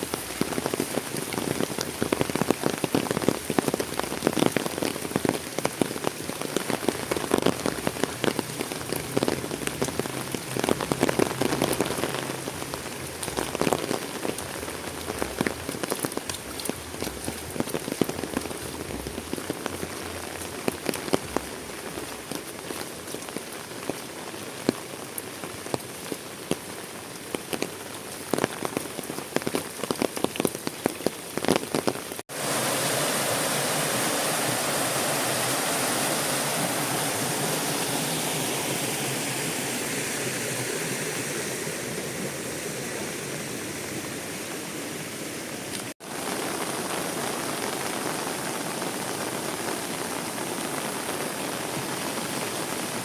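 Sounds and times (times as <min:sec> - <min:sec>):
raindrops pattering on a surface: 0:00.0 - 0:38.4, 0:45.6 - 0:53.0
steady rush of heavy rain: 0:00.0 - 0:53.0.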